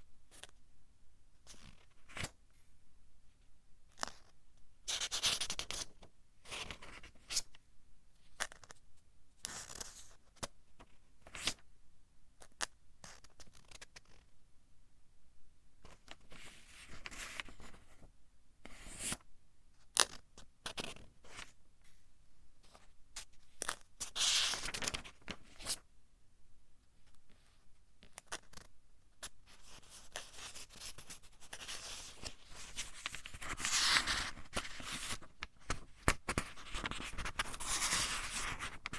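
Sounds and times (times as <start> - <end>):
book pages turning: 32.2 - 38.9.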